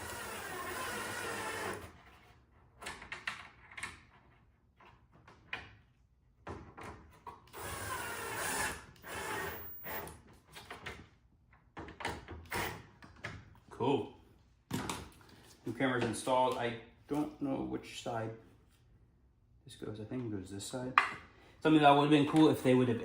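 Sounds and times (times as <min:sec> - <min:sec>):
drill whirring: 0:00.0 - 0:01.9, 0:07.5 - 0:10.2.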